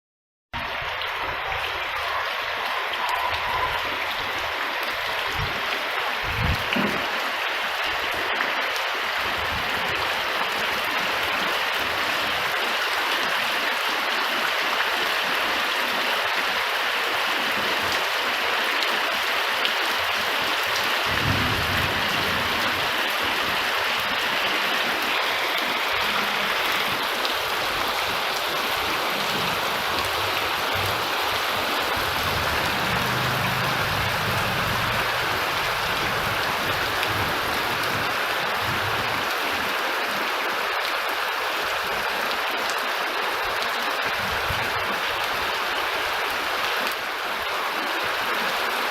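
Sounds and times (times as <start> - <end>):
rain falling: 0.6 - 48.9
thunder rumble: 21.0 - 23.6, 27.6 - 39.1.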